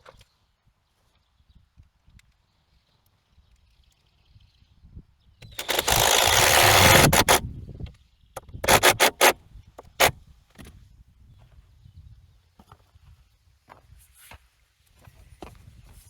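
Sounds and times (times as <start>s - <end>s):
power driver driving screw into wood: 5.4s - 7.5s, 8.4s - 10.2s.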